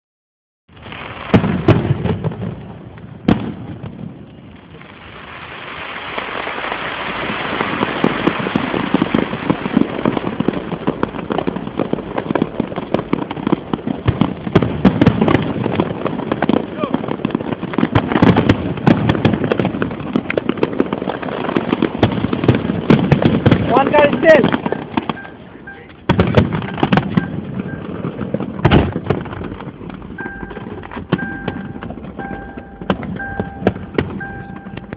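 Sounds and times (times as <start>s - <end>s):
fireworks popping and crackling: 0.7s - 34.9s
fireworks hissing: 4.6s - 12.5s
electronic beep: 24.7s - 25.9s, 30.2s - 34.9s.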